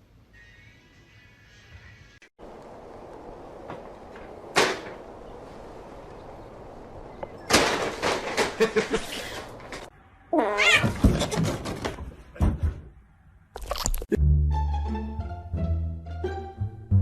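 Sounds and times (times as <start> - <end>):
clattering and knocking: 7.5 - 9.9, 10.8 - 12.9
cat meowing: 10.3 - 11.0.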